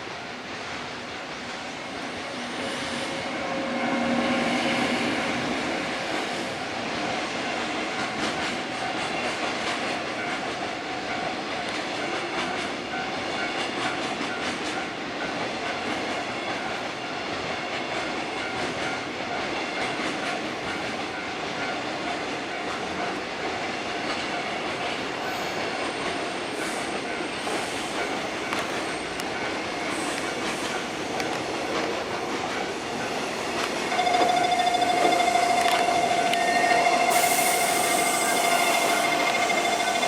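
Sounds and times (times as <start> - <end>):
freight train rumbling: 0.0 - 40.0
train wheels clicking over rail joints: 0.6 - 40.0
crossing warning bell ringing: 32.4 - 40.0.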